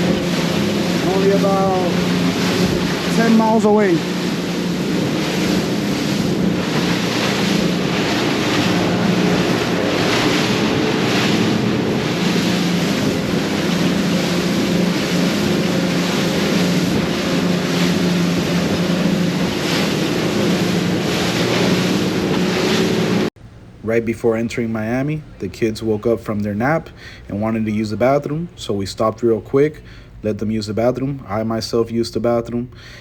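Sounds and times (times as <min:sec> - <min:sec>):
wind buffeting microphone: 0:00.0 - 0:23.3
outboard engines humming: 0:00.0 - 0:31.6
water rushing past hull: 0:00.0 - 0:33.0.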